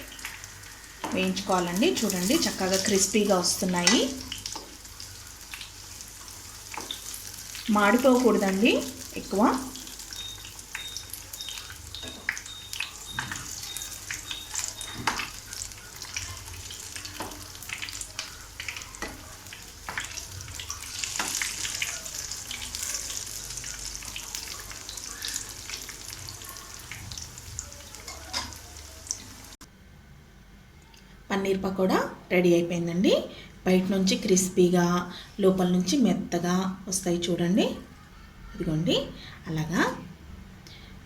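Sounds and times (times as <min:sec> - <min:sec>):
food sizzling in hot oil: 0:00.0 - 0:29.6.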